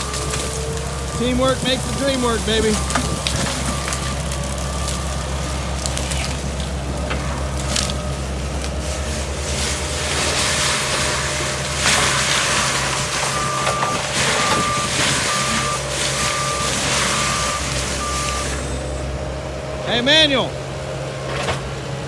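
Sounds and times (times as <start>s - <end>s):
diesel engines running: 0.0s - 22.0s
backup alarm beeping: 1.0s - 5.8s, 13.3s - 19.0s.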